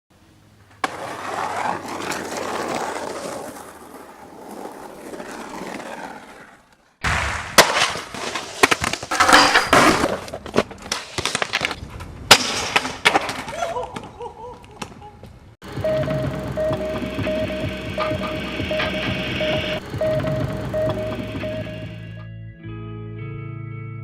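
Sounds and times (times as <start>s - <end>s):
skateboard wheels rolling on pavement: 0.2s - 22.2s
skateboard clacking on ground: 0.7s - 14.1s.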